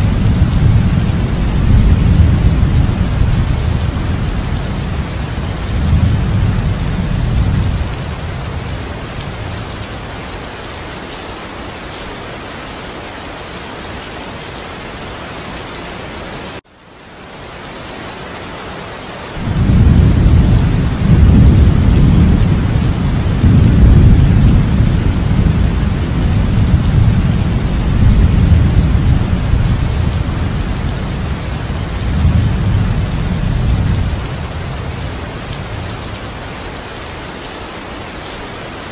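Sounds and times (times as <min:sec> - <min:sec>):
rolling thunder: 0:00.0 - 0:10.2, 0:19.4 - 0:36.6
heavy rain hissing: 0:00.0 - 0:38.9.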